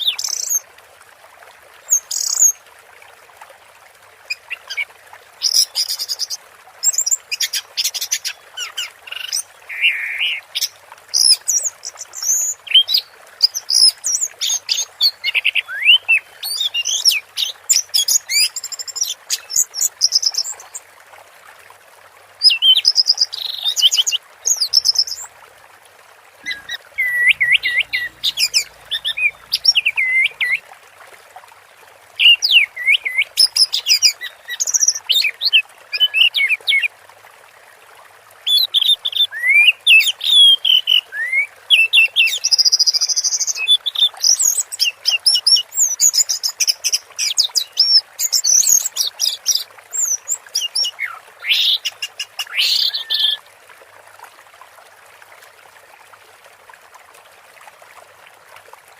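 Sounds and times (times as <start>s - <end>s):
background hiss: 26.4s - 30.4s
bird singing: 26.4s - 30.6s.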